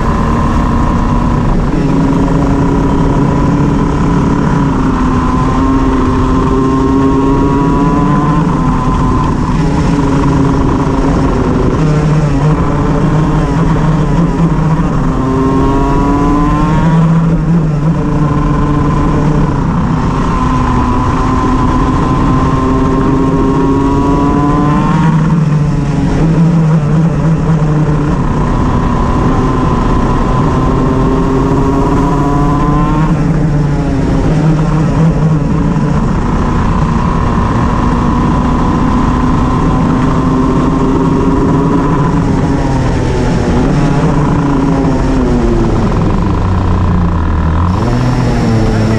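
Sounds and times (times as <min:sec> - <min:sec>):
kart engine revving: 0:00.0 - 0:48.9.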